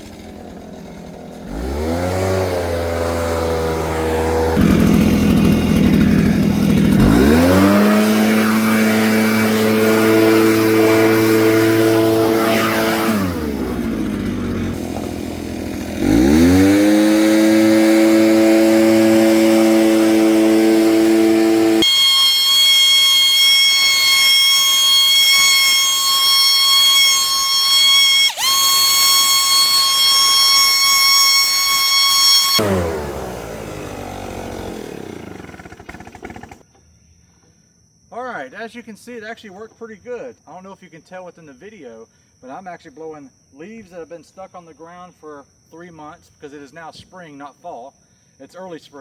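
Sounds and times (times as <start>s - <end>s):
leaf blower running: 0.0s - 36.6s
high steady whine: 4.0s - 14.9s.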